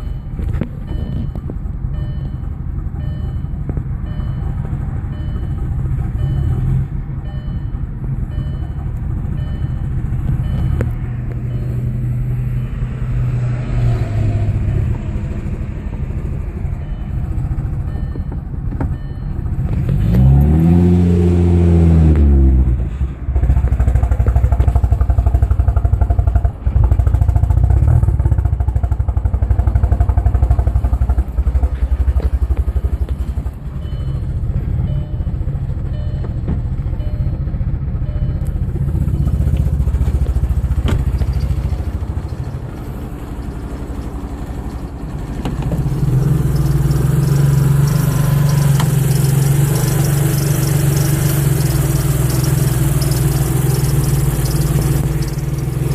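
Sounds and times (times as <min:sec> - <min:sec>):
car engine idling unevenly: 0:28.1 - 0:55.9.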